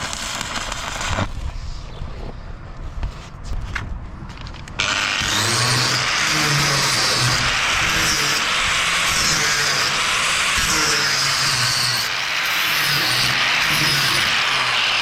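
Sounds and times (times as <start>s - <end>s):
welding arc crackling sizzle: 0.0s - 1.6s, 4.7s - 15.0s.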